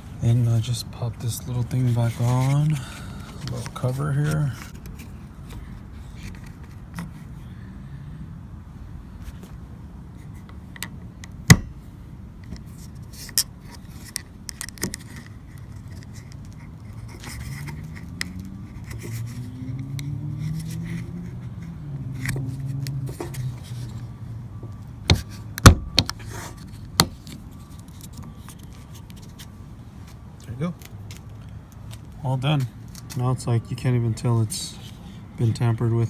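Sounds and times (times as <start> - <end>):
car engine revving: 17.6 - 23.9.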